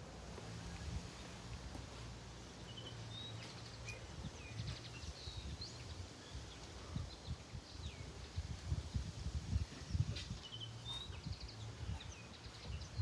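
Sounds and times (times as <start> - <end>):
bird chirps: 9.9 - 13.0.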